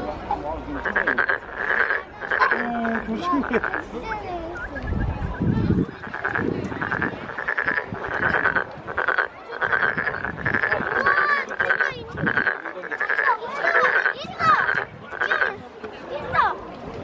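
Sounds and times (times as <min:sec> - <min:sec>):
frog croaking: 0:00.6 - 0:03.9, 0:05.9 - 0:15.6.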